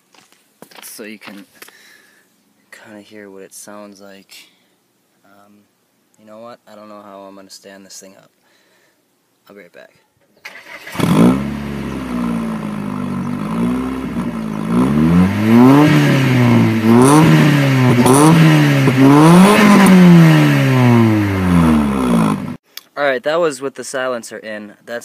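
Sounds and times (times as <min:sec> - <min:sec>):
car engine idling and revving: 0:10.8 - 0:22.6.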